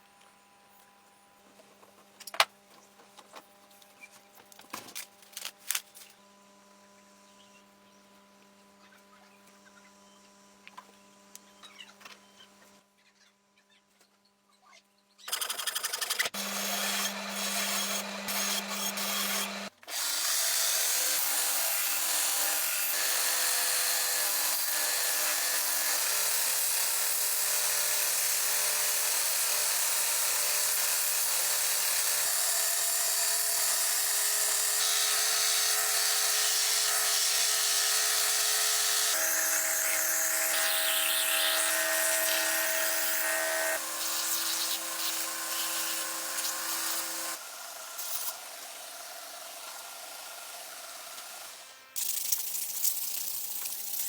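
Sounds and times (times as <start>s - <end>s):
small electric power tool running: 15.3s - 54.0s.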